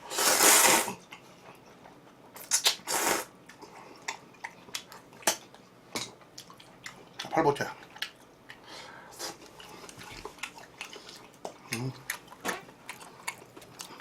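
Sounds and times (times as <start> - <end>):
slurping noodles: 0.0 - 1.0, 2.8 - 3.3
chewing: 3.4 - 14.0.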